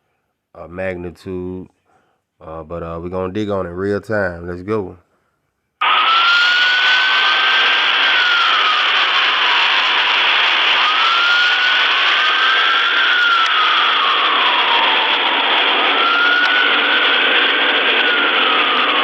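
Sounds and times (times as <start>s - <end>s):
loud steady noise rush: 5.8s - 19.0s
wailing siren: 5.8s - 19.0s.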